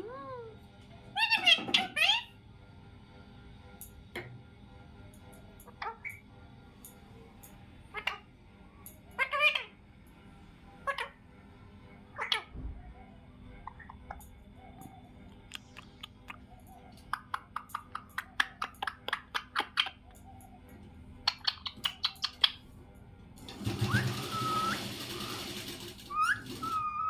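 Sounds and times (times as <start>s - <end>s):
parrot rasping call with whistle: 23.8s - 25.3s.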